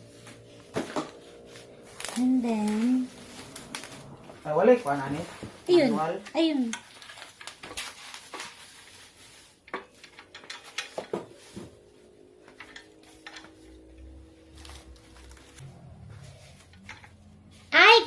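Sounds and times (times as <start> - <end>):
clinks and knocks of machine parts: 9.7 - 11.4, 12.5 - 14.0.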